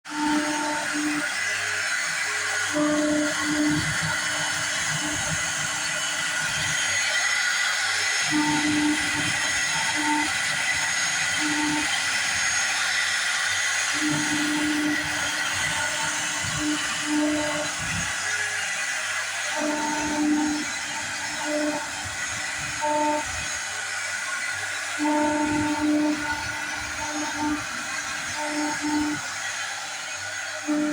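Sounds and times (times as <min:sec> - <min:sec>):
wood router whining: 0:00.0 - 0:30.9
low rumbling hum: 0:13.5 - 0:30.9.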